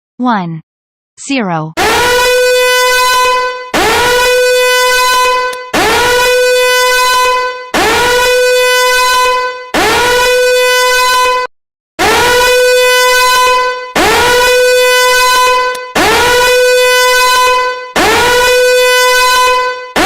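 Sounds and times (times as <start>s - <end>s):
alarm horn blare: 1.8s - 20.0s.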